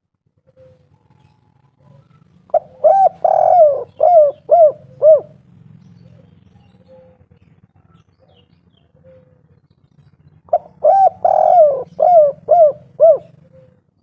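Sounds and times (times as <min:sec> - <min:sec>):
dove cooing: 0:00.3 - 0:07.5, 0:08.2 - 0:09.6, 0:10.5 - 0:14.0.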